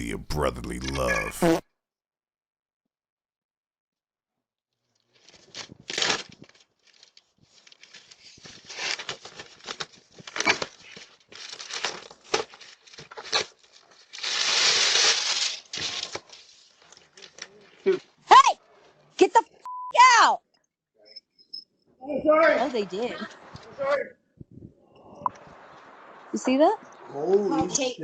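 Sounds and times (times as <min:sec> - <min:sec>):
packaging rustling and tearing: 0:05.2 - 0:17.5.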